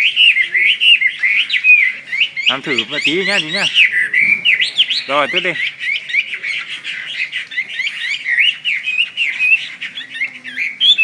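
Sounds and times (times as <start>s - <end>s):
bird singing whistled notes: 0.0s - 11.0s.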